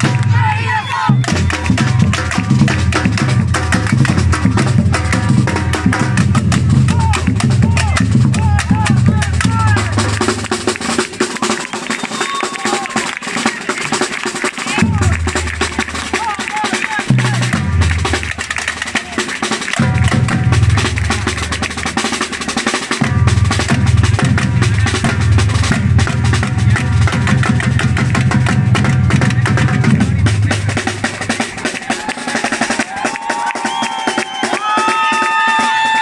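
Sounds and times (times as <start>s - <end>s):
deep bass drums: 0.0s - 10.9s, 14.7s - 19.2s, 19.8s - 32.0s.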